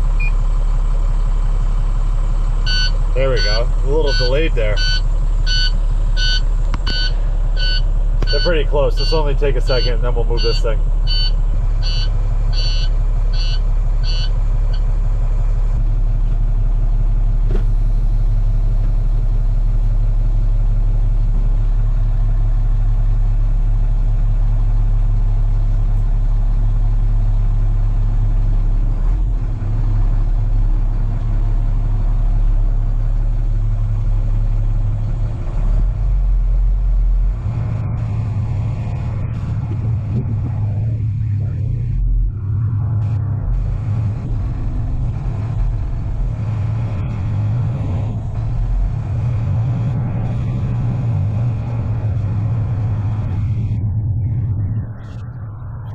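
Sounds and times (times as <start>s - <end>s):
truck engine running: 0.0s - 55.9s
dashboard warning beeper: 2.6s - 14.9s.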